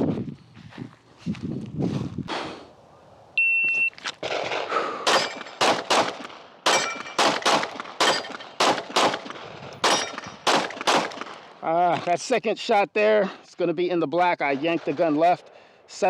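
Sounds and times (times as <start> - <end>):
shot timer beep: 3.4 - 3.9
pistol shots: 4.2 - 11.6.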